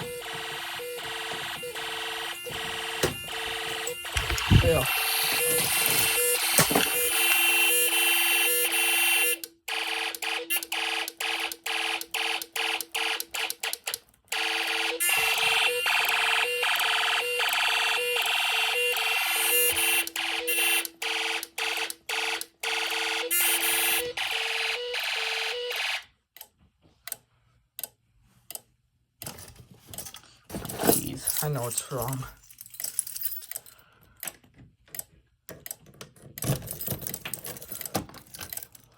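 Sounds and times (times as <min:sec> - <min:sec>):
fire alarm pulsing beeps: 0:00.0 - 0:13.2, 0:14.4 - 0:26.0.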